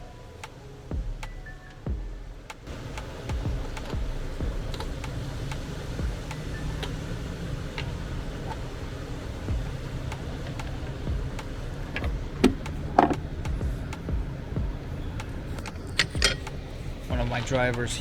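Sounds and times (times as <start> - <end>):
vehicle engine rumbling: 0.0 - 18.0
light clicks: 2.5 - 18.0.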